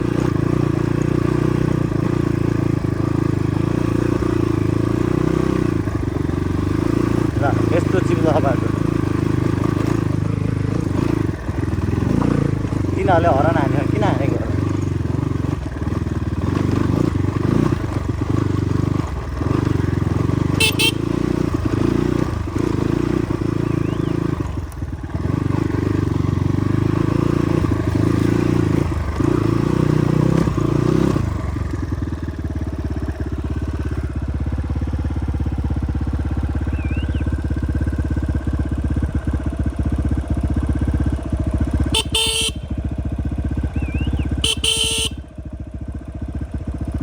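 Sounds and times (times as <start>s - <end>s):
motorcycle engine running: 0.0s - 47.0s
vehicle horn: 20.4s - 21.5s, 41.8s - 43.0s, 43.8s - 45.4s.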